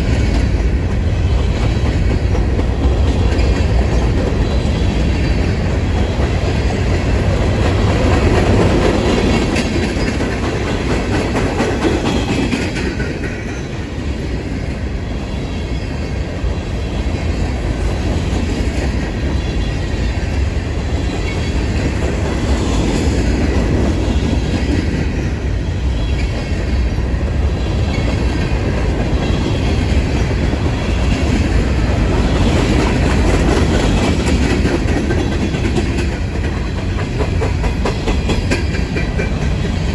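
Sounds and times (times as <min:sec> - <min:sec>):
train wheels on rails: 0:00.0 - 0:39.9.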